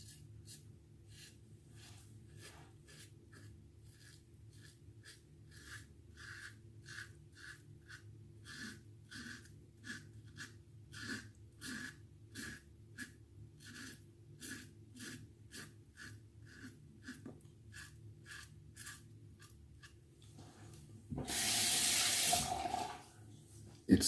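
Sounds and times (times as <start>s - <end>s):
straight razor scraping stubble: 2.4s - 20.0s.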